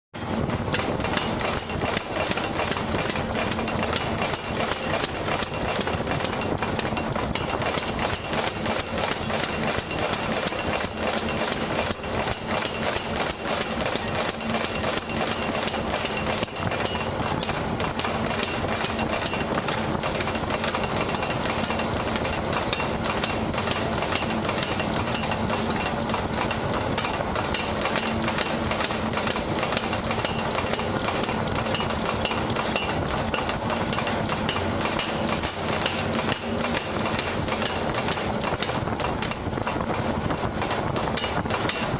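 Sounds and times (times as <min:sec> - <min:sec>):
machine hum: 0:00.2 - 0:41.9
power hammer rapid hammering: 0:00.2 - 0:41.9.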